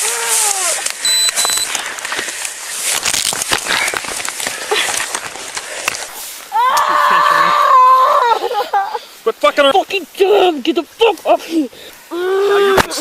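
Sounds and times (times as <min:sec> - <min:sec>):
woman screaming: 0:00.0 - 0:00.8, 0:06.5 - 0:08.5
clothing rubbing on microphone: 0:00.0 - 0:06.5.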